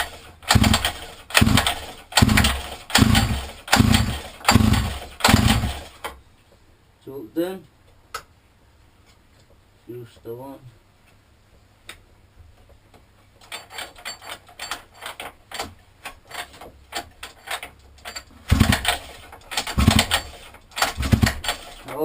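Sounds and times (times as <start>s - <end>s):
recoil pull starter clicking: 0.0s - 5.9s, 16.9s - 21.8s
engine turning over: 0.0s - 6.0s, 18.5s - 21.9s.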